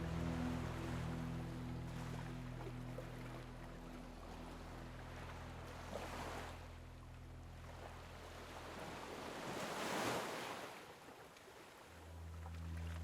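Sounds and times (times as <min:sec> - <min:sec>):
low background drone: 0:00.0 - 0:09.2, 0:11.9 - 0:13.0
sea waves washing ashore: 0:07.7 - 0:13.0.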